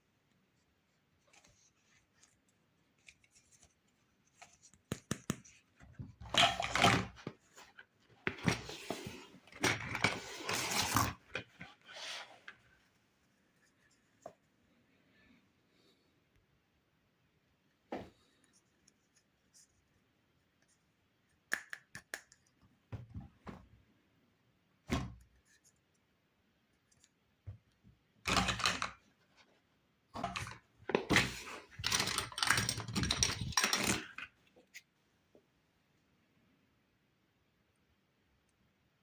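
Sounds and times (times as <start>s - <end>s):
packaging rustling and crinkling: 30.2s - 34.2s
clicks and knocks of small pieces: 31.8s - 34.3s.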